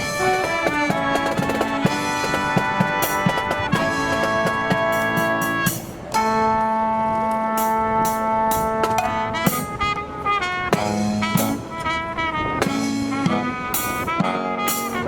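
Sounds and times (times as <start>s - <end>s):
brass band playing held chord: 0.0s - 15.0s
wind rumbling on microphone: 6.0s - 15.0s.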